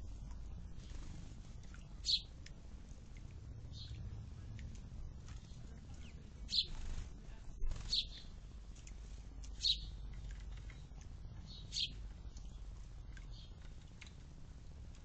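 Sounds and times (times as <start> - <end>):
low steady hum: 0.0 - 15.0
bird chirping: 2.0 - 2.3, 3.6 - 4.1, 5.9 - 6.9, 7.6 - 8.4, 9.5 - 13.7.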